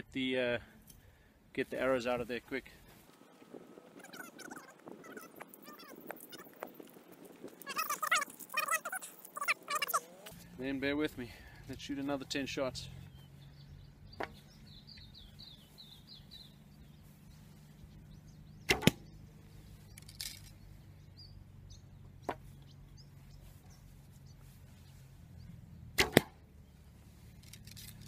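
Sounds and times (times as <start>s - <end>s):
bow string snapping: 18.6s - 19.1s, 25.9s - 26.4s
string slapping arm guard: 18.7s - 19.1s, 26.0s - 26.4s.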